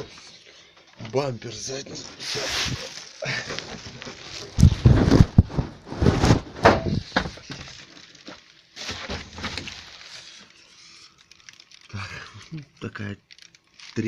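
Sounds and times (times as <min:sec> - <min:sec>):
plastic bumper rattling: 0:03.6 - 0:07.8.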